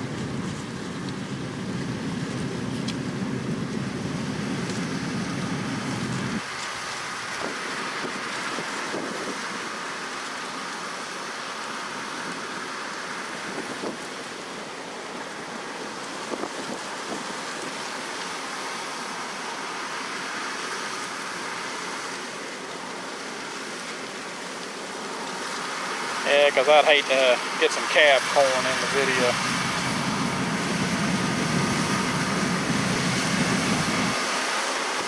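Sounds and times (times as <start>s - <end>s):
combine harvester running: 0.0s - 6.4s, 25.2s - 35.0s.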